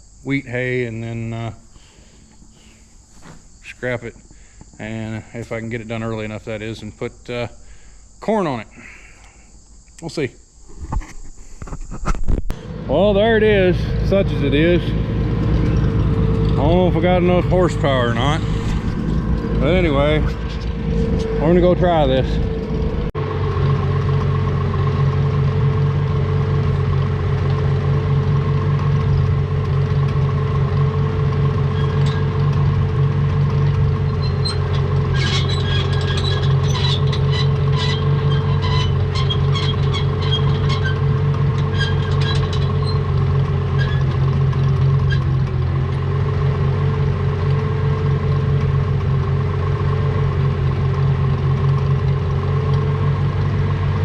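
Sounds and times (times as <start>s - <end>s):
tractor engine running: 11.6s - 54.0s
metallic clinking and rattling: 14.6s - 23.1s, 31.5s - 45.3s.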